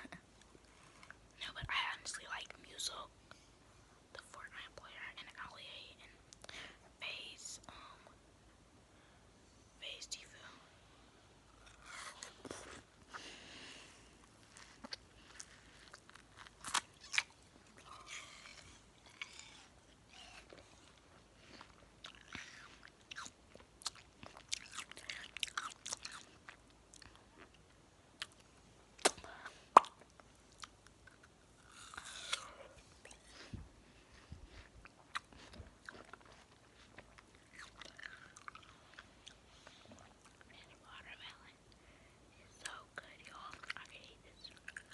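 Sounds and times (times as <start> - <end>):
watermelon being bitten and chewed: 11.5 - 13.2, 14.2 - 33.4, 34.0 - 40.5.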